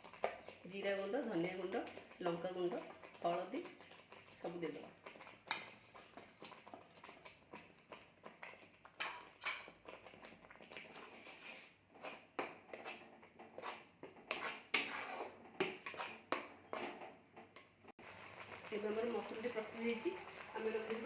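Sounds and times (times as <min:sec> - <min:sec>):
spatula scraping in a pan: 0:00.0 - 0:21.0.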